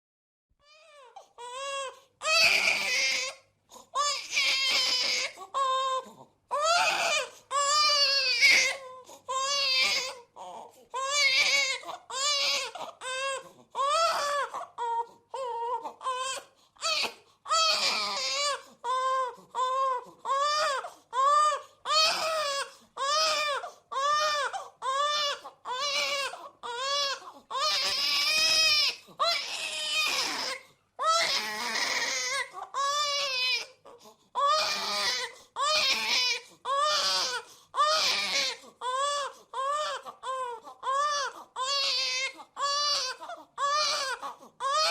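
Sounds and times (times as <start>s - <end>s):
baby crying: 0.6s - 44.9s.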